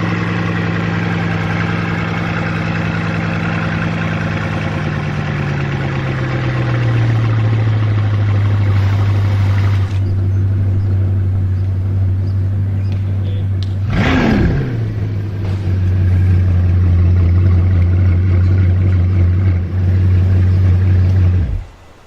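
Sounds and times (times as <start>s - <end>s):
car engine idling with rev blip: 0.0s - 22.0s.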